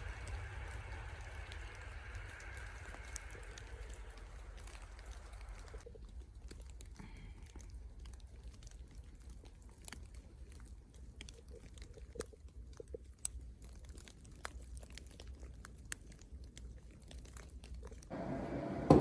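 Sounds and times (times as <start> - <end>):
steady hiss: 0.0 - 5.8
small clicks and crunches: 0.0 - 18.1.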